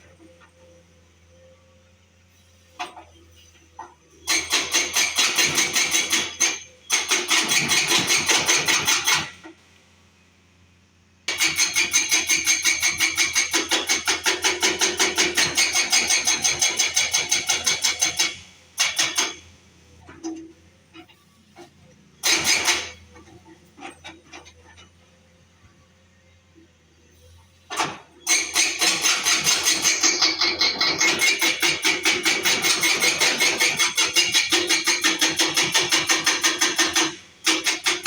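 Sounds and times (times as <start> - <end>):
rapid mechanical hammering: 4.3 - 9.3, 28.3 - 38.0.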